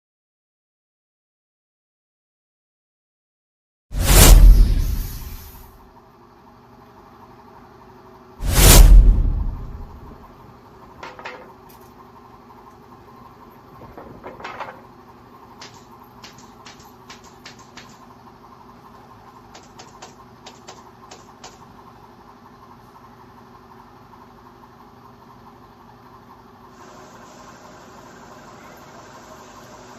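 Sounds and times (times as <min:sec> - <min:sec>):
steady low hum: 0:07.0 - 0:11.0.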